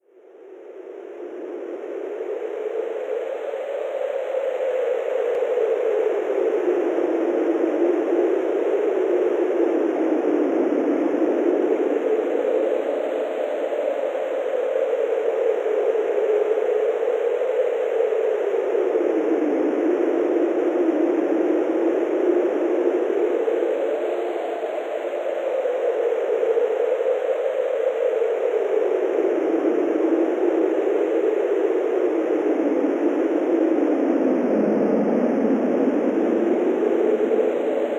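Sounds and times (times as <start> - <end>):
synthesized wind rush: 28.2 - 37.9.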